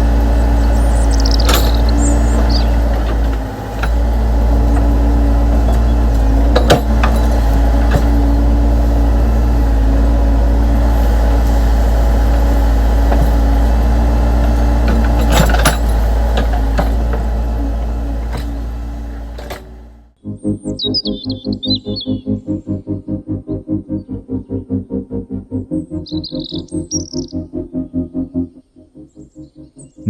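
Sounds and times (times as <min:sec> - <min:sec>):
model machine engine drone: 0:00.0 - 0:20.1
clicks and knocks from models: 0:12.3 - 0:19.8.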